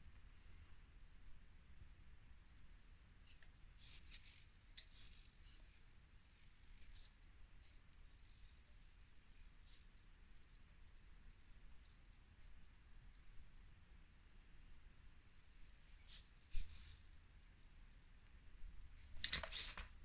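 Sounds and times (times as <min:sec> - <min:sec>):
toy crawler clicking and rattling: 0:03.8 - 0:07.2, 0:15.3 - 0:17.2, 0:19.2 - 0:19.9.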